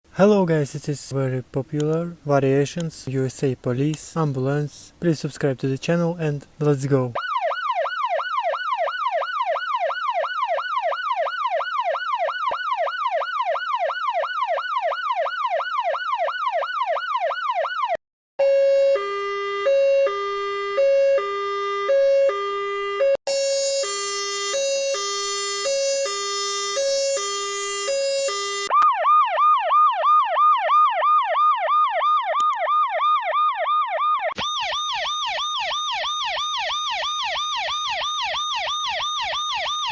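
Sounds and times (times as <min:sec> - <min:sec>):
two-tone hi-lo siren: 0:07.2 - 0:39.9
yelping siren: 0:07.2 - 0:39.9
rapid warbling siren tone: 0:33.9 - 0:39.9.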